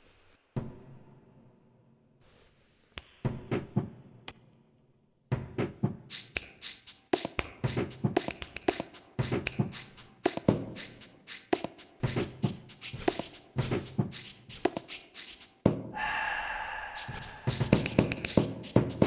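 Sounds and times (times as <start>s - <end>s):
percussive music of taps and knocks: 5.3s - 15.9s, 17.0s - 19.0s.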